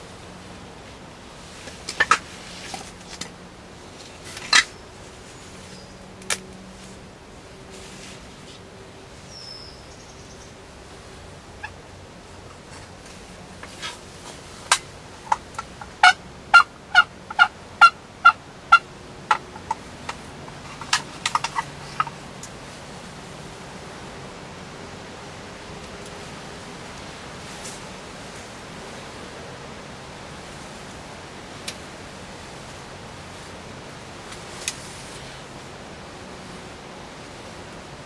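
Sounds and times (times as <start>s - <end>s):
turkey calling: 11.6s - 11.8s, 14.7s - 22.2s.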